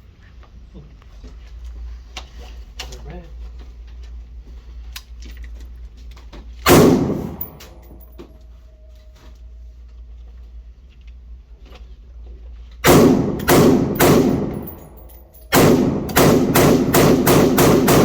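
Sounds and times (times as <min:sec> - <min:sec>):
rifle gunshots: 0:06.7 - 0:07.6, 0:12.8 - 0:18.0.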